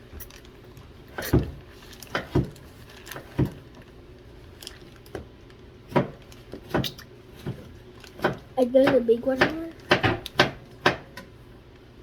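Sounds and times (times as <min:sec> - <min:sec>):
dull kitchen knocks and thuds: 0:01.3 - 0:01.6, 0:02.2 - 0:02.6, 0:05.9 - 0:11.3.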